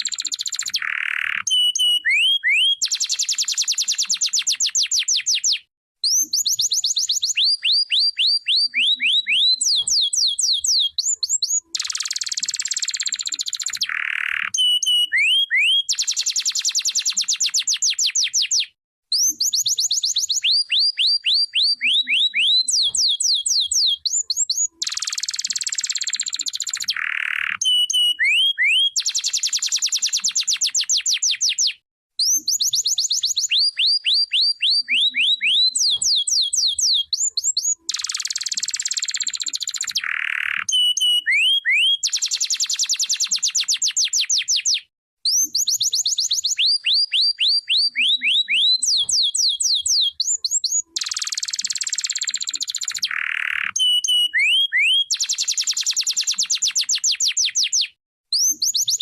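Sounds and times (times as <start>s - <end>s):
canary singing: 0.0s - 59.0s.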